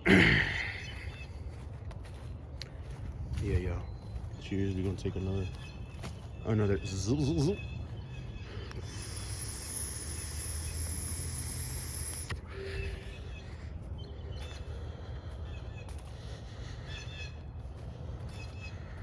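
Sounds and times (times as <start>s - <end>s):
faint bird chirps: 3.4s - 17.4s
air hissing through vape pen: 8.6s - 12.4s.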